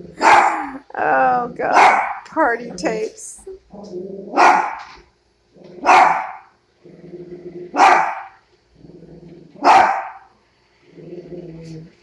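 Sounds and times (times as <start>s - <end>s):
dog growling: 0.0s - 1.8s, 3.6s - 4.8s, 5.5s - 10.0s, 10.8s - 12.0s
dog barking: 0.2s - 0.8s, 1.8s - 2.3s, 4.4s - 5.0s, 5.8s - 6.5s, 7.8s - 8.4s, 9.6s - 10.3s.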